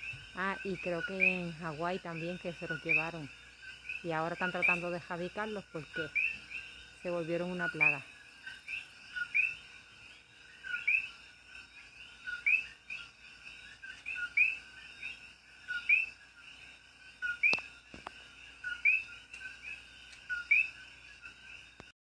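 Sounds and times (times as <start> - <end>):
frogs calling two-note calls: 0.0 - 21.9.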